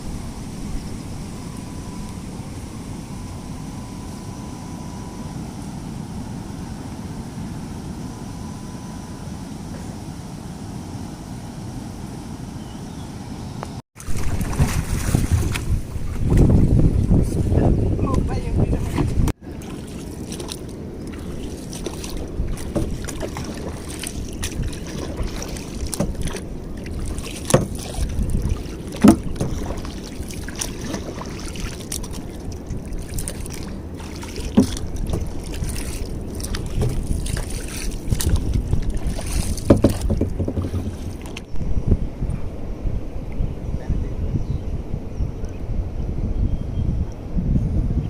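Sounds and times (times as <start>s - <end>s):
water noise: 0.0s - 48.0s
wind on microphone: 0.0s - 48.0s
sharp knocks: 39.6s - 41.0s.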